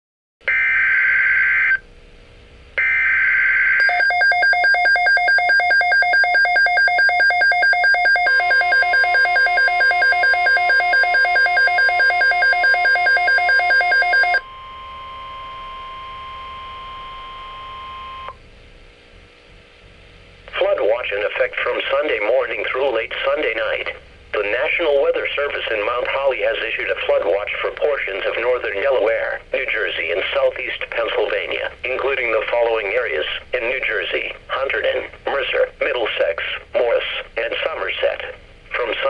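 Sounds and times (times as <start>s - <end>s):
fast-pulsing electronic alarm tone: 2.8s - 18.3s
steady high tone: 2.8s - 18.4s.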